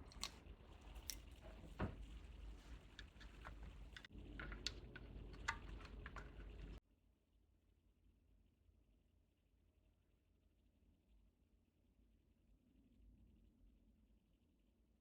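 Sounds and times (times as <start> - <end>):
small clicks and taps of toys: 3.0 - 6.8.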